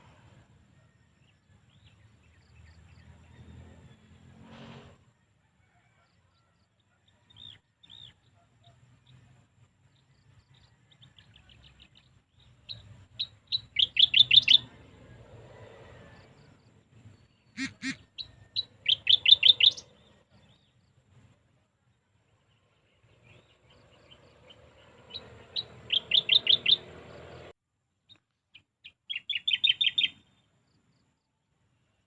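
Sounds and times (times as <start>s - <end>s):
sharp bird calls: 11.5s - 14.8s, 17.1s - 20.6s, 23.2s - 27.5s, 28.1s - 30.4s.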